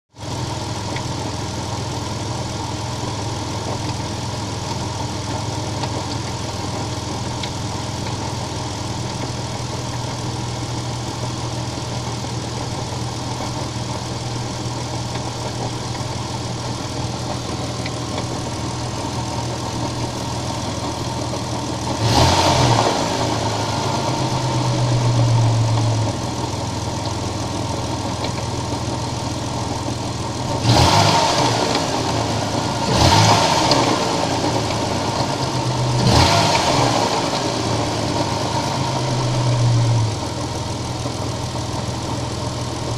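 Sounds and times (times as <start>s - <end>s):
car engine idling with knock: 0.2s - 42.9s
car engine revving: 21.8s - 28.3s, 30.4s - 40.8s.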